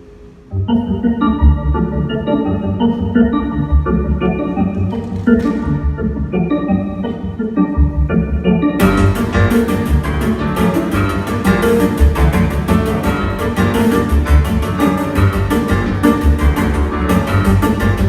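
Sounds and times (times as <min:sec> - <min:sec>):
piano and electronic music: 0:00.0 - 0:18.0
deep heavy bass line: 0:07.8 - 0:18.0.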